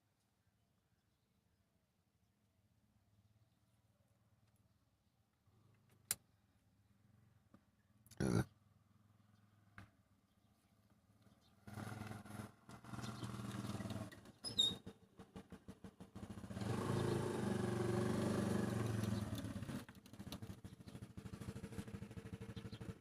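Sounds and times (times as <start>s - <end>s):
engine cranking on starter: 11.6s - 23.0s
short squeak: 14.4s - 14.9s.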